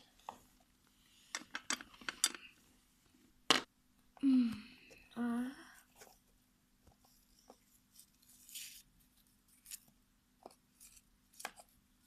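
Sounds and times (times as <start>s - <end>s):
soft rustle: 5.8s - 10.0s.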